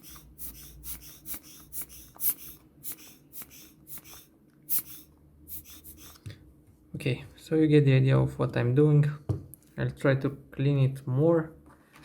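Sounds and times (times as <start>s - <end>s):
puffs of air blown into port: 0.0s - 6.2s.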